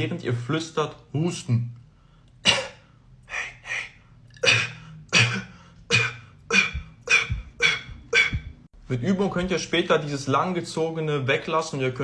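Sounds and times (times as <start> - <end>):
beatbox cough snare: 2.4 - 2.8, 4.5 - 8.6.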